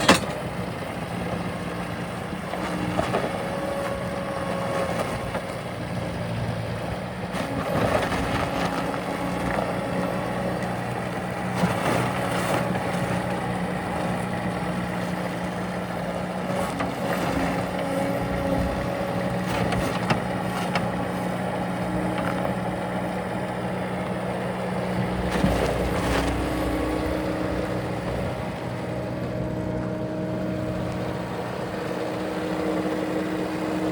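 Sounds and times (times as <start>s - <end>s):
metal clanks and knocks: 0.0s - 0.5s
diesel engine running: 0.0s - 33.9s.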